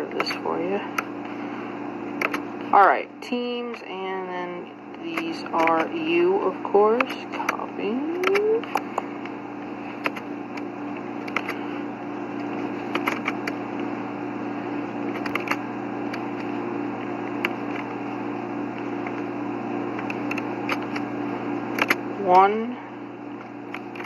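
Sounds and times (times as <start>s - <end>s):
steady low hum: 0.0s - 24.0s
laptop clicks: 2.2s - 2.4s, 10.0s - 11.6s, 12.4s - 13.6s, 15.1s - 16.5s, 20.0s - 21.1s, 21.8s - 22.0s.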